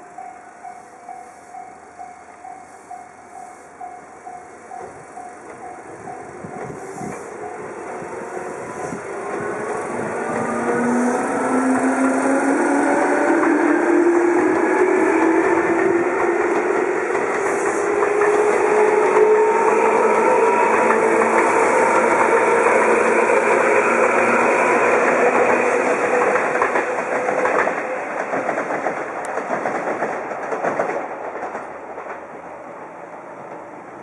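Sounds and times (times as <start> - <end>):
electric train motor whine: 0.0 - 27.0
wheels clacking over rail joints: 4.7 - 32.4.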